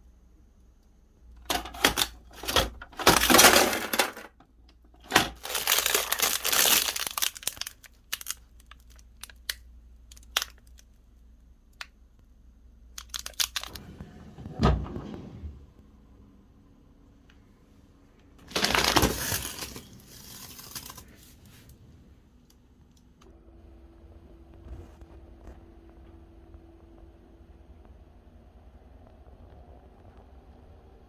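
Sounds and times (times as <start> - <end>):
packaging crinkling and tearing: 5.0 - 11.0, 13.0 - 13.8, 18.4 - 21.2.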